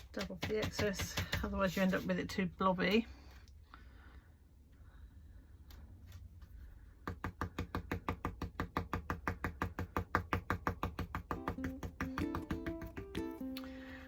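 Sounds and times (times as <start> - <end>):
stencil brush tapping: 0.0 - 2.1, 7.0 - 13.3
music: 11.3 - 14.0.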